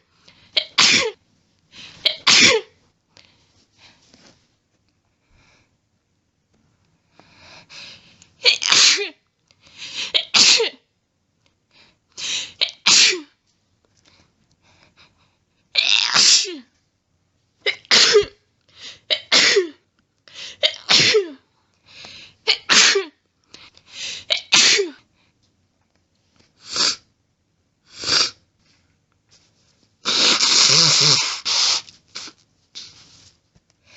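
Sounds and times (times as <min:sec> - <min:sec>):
person sneezing loudly: 0:00.6 - 0:01.2, 0:02.0 - 0:02.7, 0:08.4 - 0:09.2, 0:10.0 - 0:10.8, 0:12.6 - 0:13.3, 0:15.8 - 0:16.7, 0:17.7 - 0:18.4, 0:19.1 - 0:19.8, 0:20.6 - 0:21.4, 0:22.5 - 0:23.2, 0:24.3 - 0:25.0, 0:30.0 - 0:33.0.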